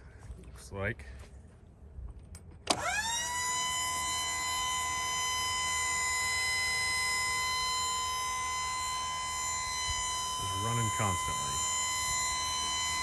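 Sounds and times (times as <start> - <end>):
hydraulic pump motor whining: 2.7 - 13.0.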